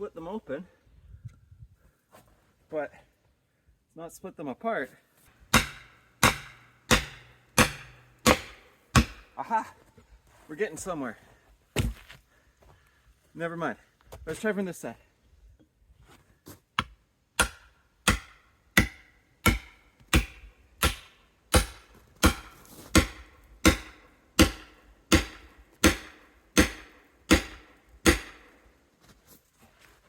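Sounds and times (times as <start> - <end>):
hatchet striking log: 5.5 - 9.4, 16.8 - 28.6.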